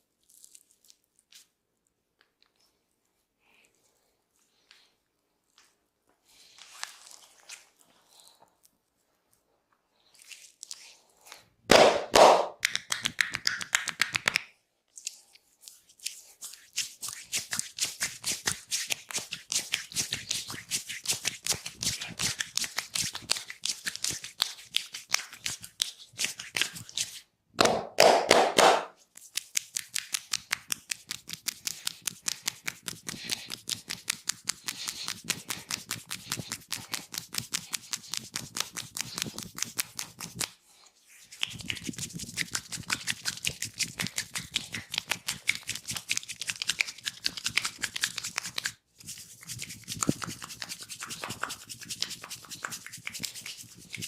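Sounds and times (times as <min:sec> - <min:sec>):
hands striking the body: 0:11.7 - 0:14.4, 0:27.6 - 0:28.9.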